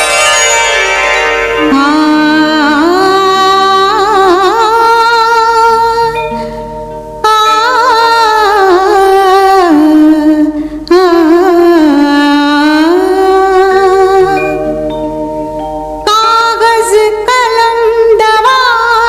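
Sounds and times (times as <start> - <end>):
film song melody with held notes: 14.3 - 16.1.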